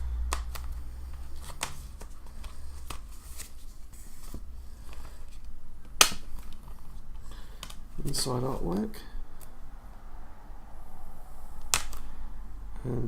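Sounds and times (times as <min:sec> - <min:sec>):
low hum: 0:00.0 - 0:13.0
plastic case and paper rustling: 0:00.4 - 0:08.6.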